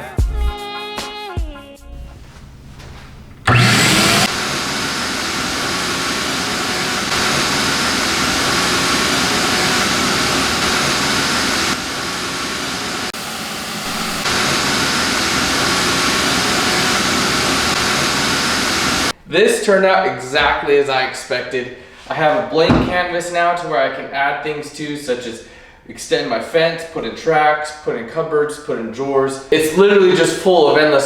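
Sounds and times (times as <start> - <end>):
shop vacuum running: 1.9 - 19.2.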